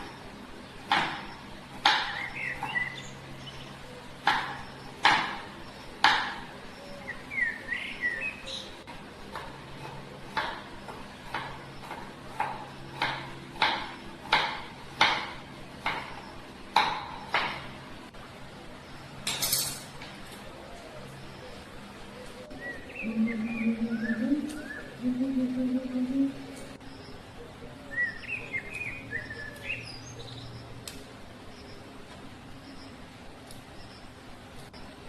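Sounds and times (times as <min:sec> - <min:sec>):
kitchen utensils knocking: 0:19.3 - 0:19.9
bird chirping: 0:21.1 - 0:30.8.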